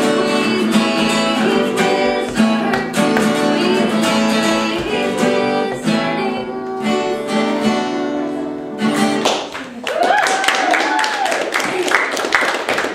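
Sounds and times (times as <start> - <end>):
acoustic guitar strumming: 0.0 - 9.5.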